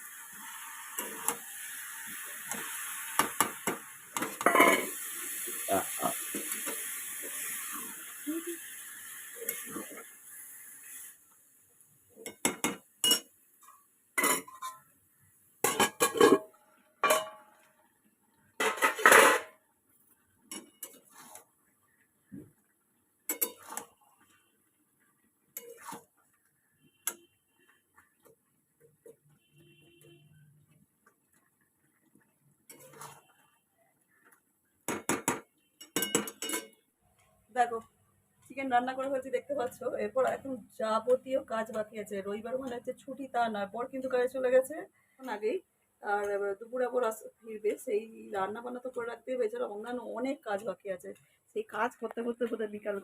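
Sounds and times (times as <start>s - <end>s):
metal pots and pans clattering: 3.6s - 5.0s, 14.2s - 14.9s, 15.6s - 17.5s, 18.6s - 19.6s, 23.3s - 23.9s, 34.9s - 36.8s.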